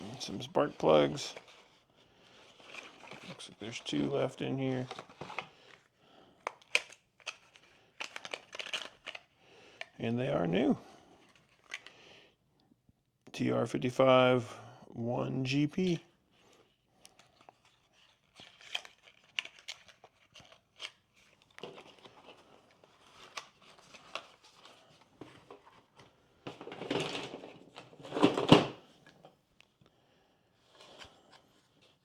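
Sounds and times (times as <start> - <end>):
packaging crinkling and rustling: 0.0 - 10.0, 11.2 - 11.9, 17.0 - 29.2.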